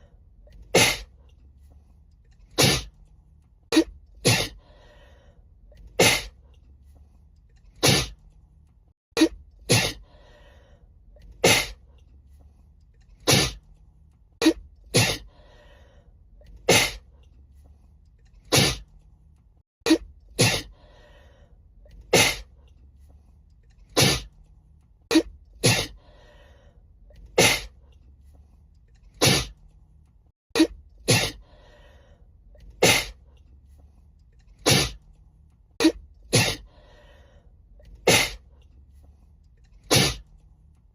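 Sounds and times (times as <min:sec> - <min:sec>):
woman sneezing: 0:04.2 - 0:04.6, 0:09.2 - 0:10.0, 0:19.9 - 0:20.7, 0:29.2 - 0:29.5, 0:30.6 - 0:31.4, 0:35.8 - 0:36.6, 0:38.0 - 0:38.4, 0:39.9 - 0:40.2.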